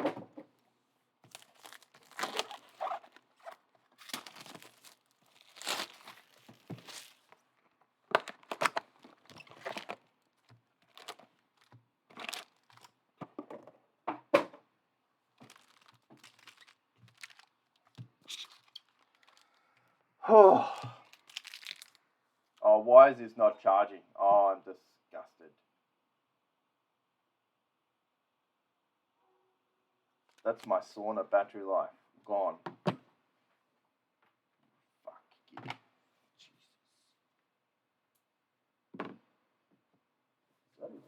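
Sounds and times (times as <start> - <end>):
card pack wrappers tearing: 1.3 - 7.4, 8.1 - 10.0, 10.8 - 12.9, 15.4 - 19.7, 20.8 - 22.0
wrapper snap: 1.3 - 7.4, 10.8 - 12.9, 15.4 - 19.6, 20.8 - 22.0.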